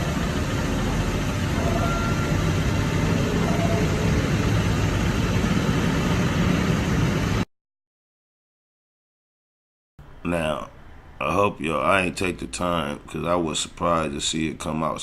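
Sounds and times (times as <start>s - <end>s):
low engine hum: 0.0s - 7.4s.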